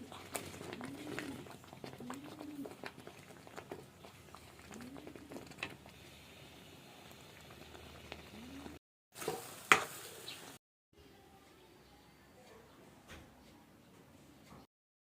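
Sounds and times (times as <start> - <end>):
thick mixture bubbling in pan: 0.0 - 9.6.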